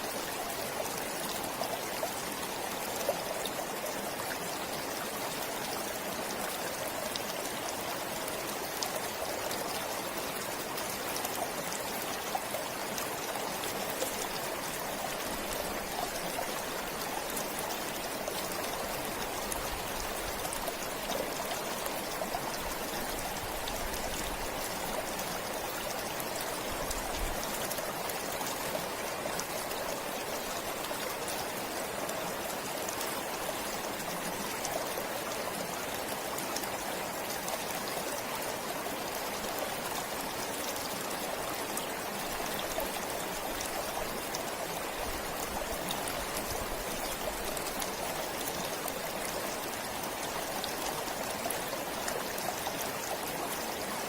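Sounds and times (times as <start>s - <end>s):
stream flowing: 0.0s - 54.0s.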